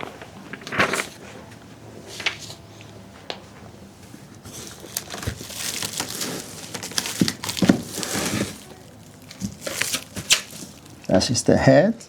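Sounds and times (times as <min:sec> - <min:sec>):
plastic film crinkling: 0:04.4 - 0:11.2.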